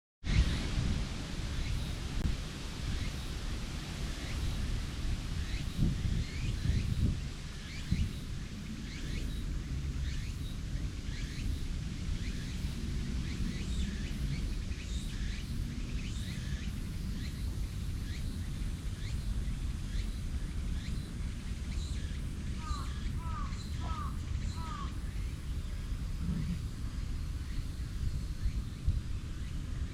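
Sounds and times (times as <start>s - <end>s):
small birds chirping: 13.3s - 26.8s
lower bird call: 22.6s - 26.9s
low rumble: 26.0s - 27.3s.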